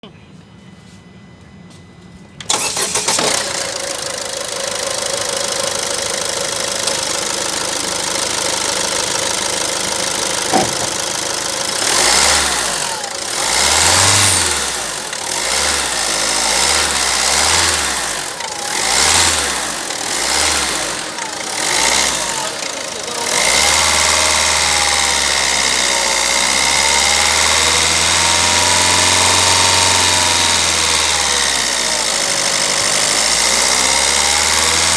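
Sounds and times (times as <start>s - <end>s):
car engine cranking: 2.4s - 34.9s
car engine idling: 2.4s - 34.9s.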